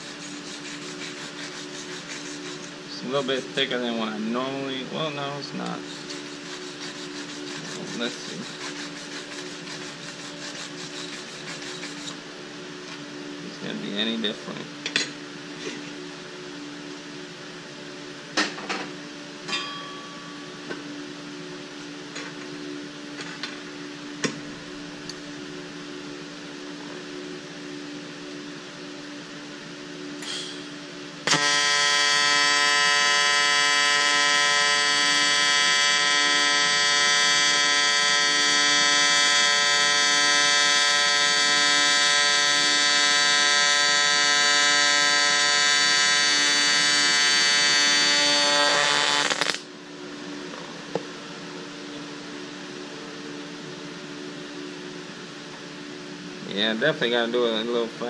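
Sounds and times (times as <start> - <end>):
welding arc buzzing: 0.0 - 3.8, 30.2 - 49.7.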